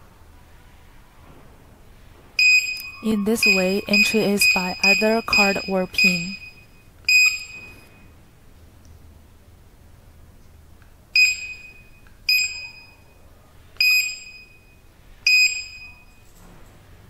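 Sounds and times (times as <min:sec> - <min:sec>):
keypad buzzer beeps: 0:02.4 - 0:07.9, 0:11.2 - 0:13.0.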